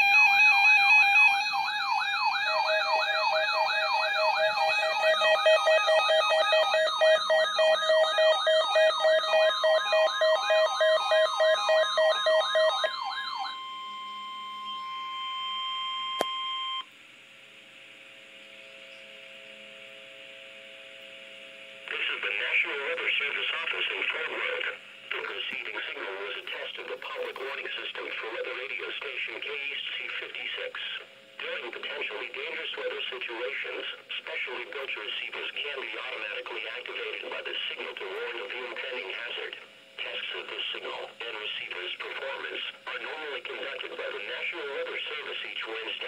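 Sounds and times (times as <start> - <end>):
wailing siren tone: 0.0 - 16.8
steady beeping tones: 0.0 - 16.9
steady warning alarm tone: 0.0 - 16.9.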